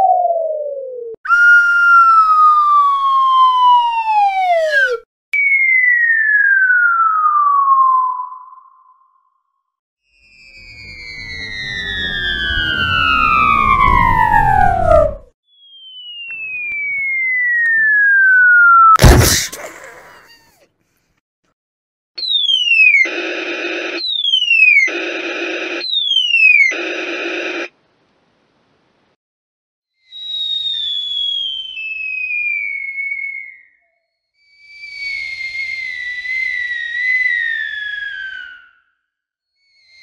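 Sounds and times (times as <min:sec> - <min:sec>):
falling whistle sound effects: 0:00.0 - 0:09.3, 0:10.2 - 0:19.4, 0:30.0 - 0:39.0, 0:39.6 - 0:40.0
loud bang: 0:19.0 - 0:19.7
short bursts of noise: 0:19.0 - 0:20.0, 0:22.9 - 0:26.0, 0:26.6 - 0:27.7.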